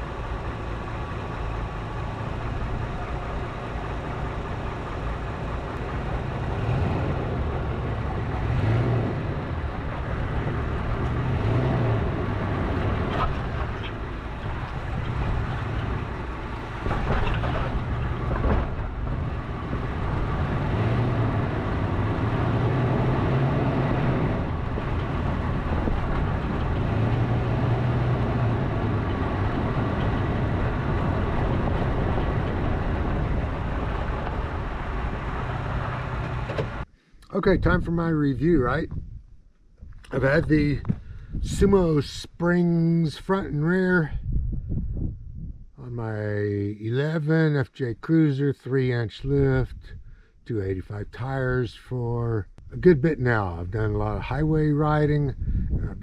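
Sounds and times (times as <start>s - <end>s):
engine droning: 0.0s - 44.2s, 45.8s - 56.0s
body and suspension clunks: 12.0s - 36.9s, 40.8s - 41.4s.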